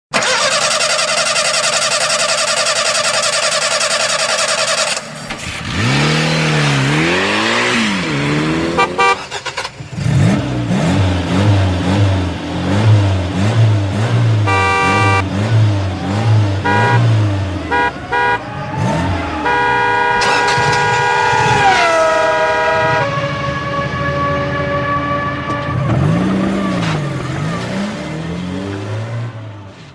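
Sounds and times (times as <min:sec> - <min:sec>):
car engine revving: 0:00.1 - 0:29.9
car horn: 0:06.9 - 0:09.7, 0:14.0 - 0:26.8.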